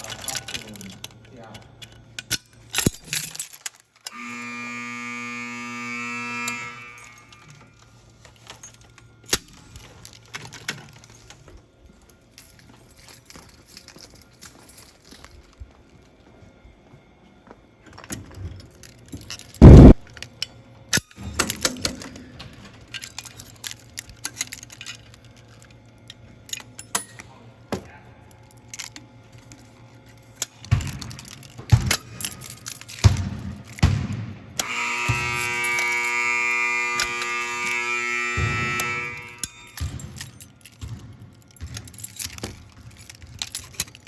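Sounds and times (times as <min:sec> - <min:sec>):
handling clicks and knocks: 0:00.0 - 0:04.4, 0:17.9 - 0:44.0
keys jangling: 0:00.0 - 0:04.4, 0:06.4 - 0:16.0, 0:17.8 - 0:37.8, 0:38.4 - 0:44.0.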